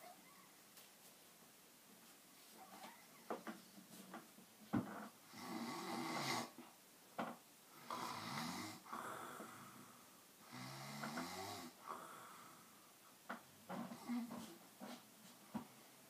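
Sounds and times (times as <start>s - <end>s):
person snoring: 5.3s - 6.6s, 7.8s - 12.7s.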